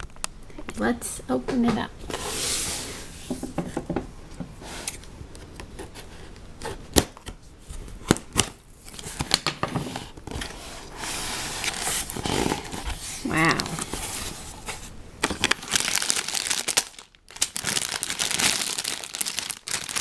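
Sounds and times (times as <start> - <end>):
cardboard rustling: 5.5 - 20.0.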